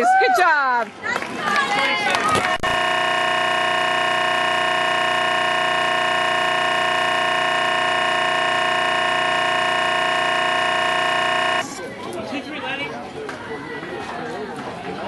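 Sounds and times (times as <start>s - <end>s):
loud horn-like chord tone: 2.6s - 11.8s.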